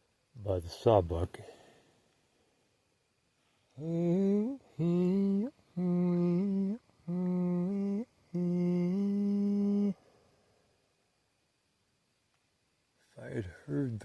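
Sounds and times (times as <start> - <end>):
man chanting wordlessly: 0.4 - 1.5, 3.8 - 10.0.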